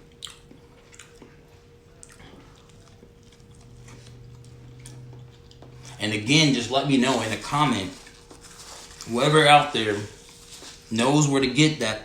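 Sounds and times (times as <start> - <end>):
person chewing food: 0.0 - 6.0
low steady hum: 0.0 - 12.0.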